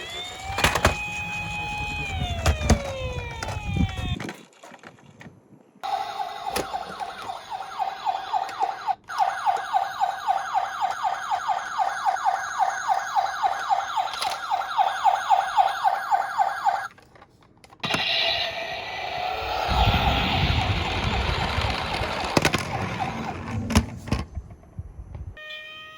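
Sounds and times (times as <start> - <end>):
toy siren wailing: 0.0 - 4.2, 5.8 - 16.9, 17.9 - 23.7, 25.4 - 25.9
rough sound: 17.8 - 24.1.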